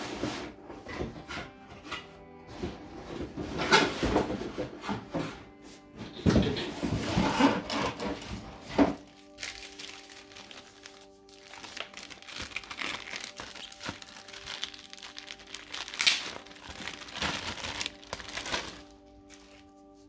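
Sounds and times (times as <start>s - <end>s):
background music: 0.0s - 20.0s
packaging crinkling: 7.9s - 20.0s.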